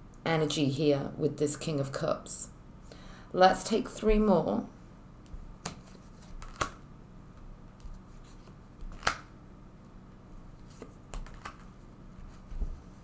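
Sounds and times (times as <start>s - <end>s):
cards snapping and tapping: 5.6s - 6.8s, 7.8s - 9.3s, 10.7s - 11.8s.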